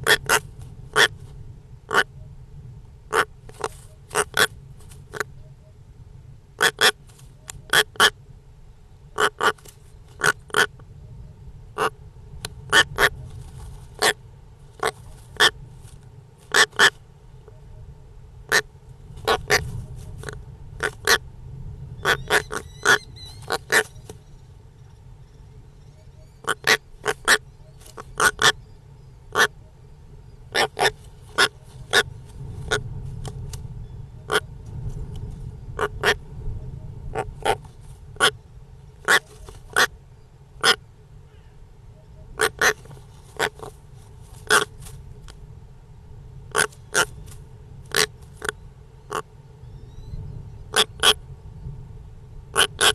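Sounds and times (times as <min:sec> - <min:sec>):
birds giving harsh calls: 0:00.0 - 0:00.4, 0:01.9 - 0:02.1, 0:03.1 - 0:04.5, 0:06.6 - 0:07.0, 0:09.2 - 0:09.6, 0:10.2 - 0:10.7, 0:14.8 - 0:15.6, 0:16.5 - 0:17.0, 0:22.0 - 0:29.6, 0:30.3 - 0:32.1, 0:35.8 - 0:36.2, 0:39.0 - 0:39.9, 0:40.6 - 0:41.6, 0:42.4 - 0:43.8, 0:44.4 - 0:44.8, 0:46.5 - 0:51.2
low rumble: 0:17.0 - 0:52.6
bird giving short calls: 0:22.0 - 0:24.1, 0:25.8 - 0:29.6, 0:39.0 - 0:39.9.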